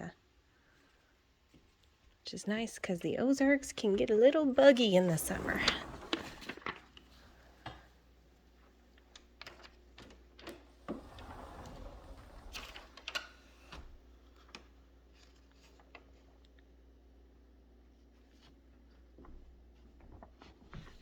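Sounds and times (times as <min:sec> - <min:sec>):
soft rustle: 0:00.5 - 0:07.6.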